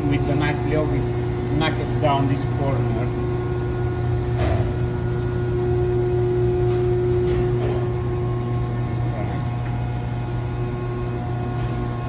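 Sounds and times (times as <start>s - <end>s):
low machinery hum: 0.0s - 12.0s.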